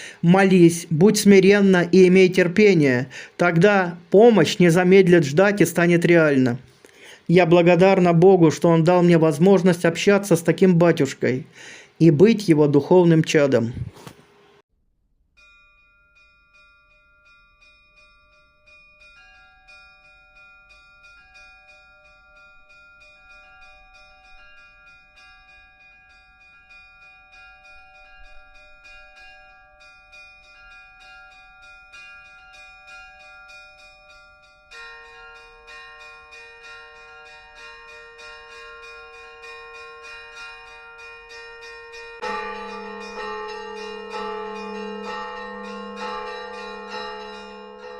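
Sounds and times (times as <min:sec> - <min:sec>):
church bells ringing: 0:00.0 - 0:06.7, 0:15.4 - 0:47.9
lower bell ringing: 0:15.4 - 0:47.9.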